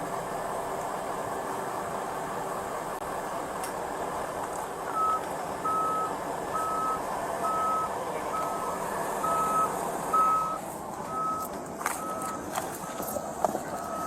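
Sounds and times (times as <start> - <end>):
engine idling: 0.0 - 14.0
reversing alarm beeping: 4.9 - 14.0.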